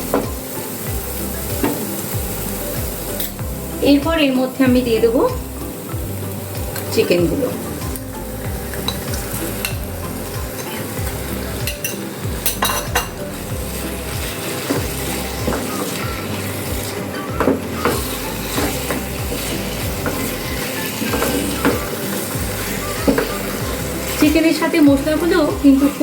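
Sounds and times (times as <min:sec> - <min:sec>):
chicken sizzling in a pan: 0:00.0 - 0:26.0
spatula scraping and knocking pan: 0:06.7 - 0:26.0.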